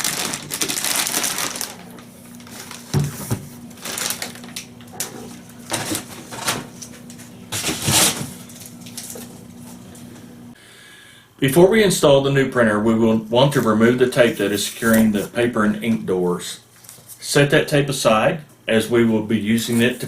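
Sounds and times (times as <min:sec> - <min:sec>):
packing material rustling: 0:00.0 - 0:09.4
faint steady hum: 0:00.0 - 0:20.0.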